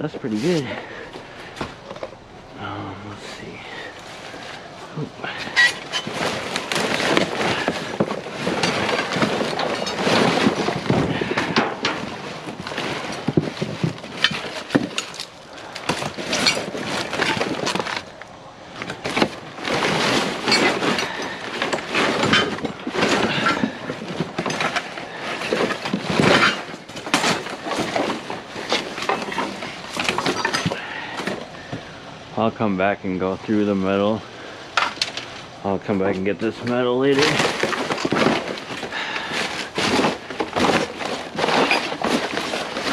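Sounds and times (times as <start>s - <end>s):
scrap debris clattering: 0.0s - 32.0s, 33.5s - 42.9s.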